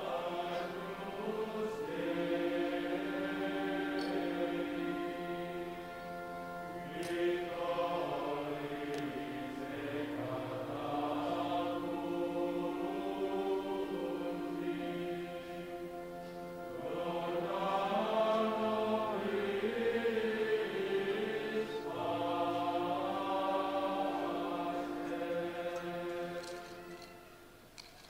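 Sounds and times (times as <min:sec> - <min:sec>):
choir singing held chords: 0:00.0 - 0:28.0.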